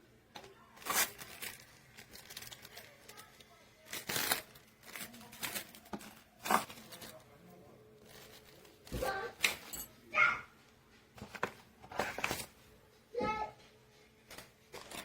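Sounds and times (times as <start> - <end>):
packaging rustling and crinkling: 0.8 - 7.3, 8.0 - 9.9, 11.2 - 12.6, 14.3 - 15.0.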